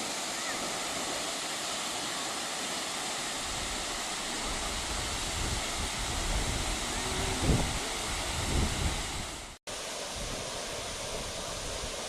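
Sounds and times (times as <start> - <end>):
large waterfall rushing: 0.0 - 12.0
wind buffeting microphone: 3.4 - 12.0.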